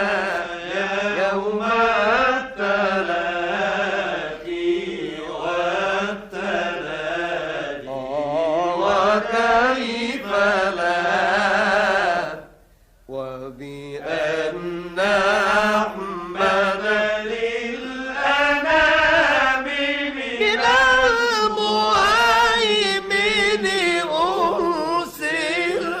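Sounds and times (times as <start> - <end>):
man chanting devotional song: 13.1 - 16.7.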